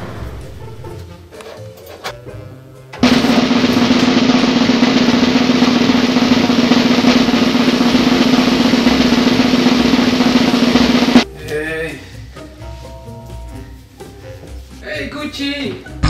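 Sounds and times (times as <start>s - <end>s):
snare drum roll: 3.0s - 11.2s.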